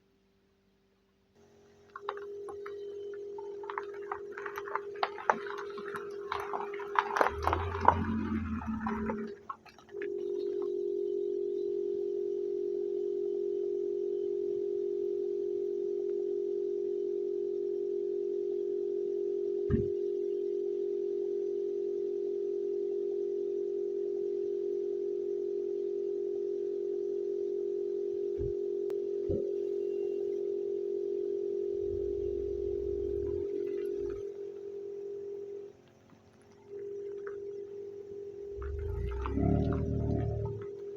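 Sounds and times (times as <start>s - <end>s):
low rumble: 7.3s - 9.4s, 31.8s - 34.3s, 38.5s - 40.8s
air compressor drone: 31.8s - 34.3s.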